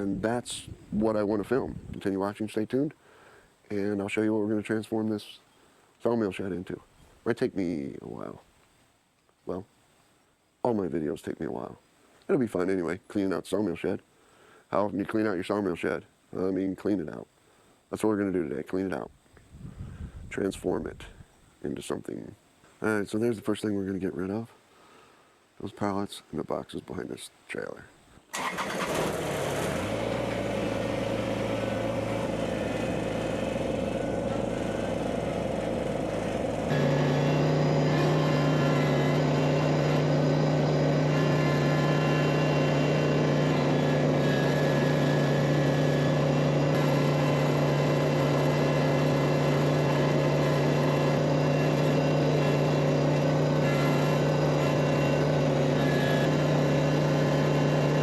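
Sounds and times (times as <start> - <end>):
tractor diesel engine running: 28.4 - 58.0.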